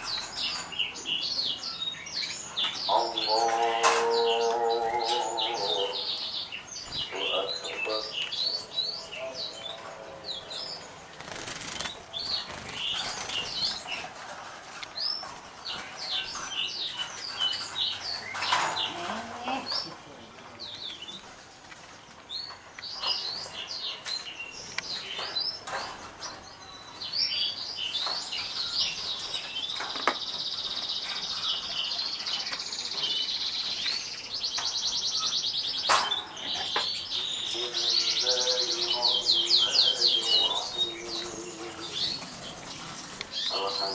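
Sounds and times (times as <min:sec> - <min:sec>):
canary singing: 0:00.0 - 0:43.9.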